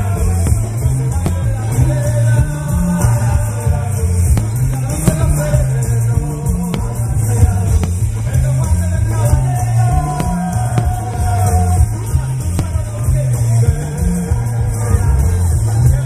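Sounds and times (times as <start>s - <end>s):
loud rock music: 0.0s - 16.0s
sharp cracks: 4.2s - 8.6s.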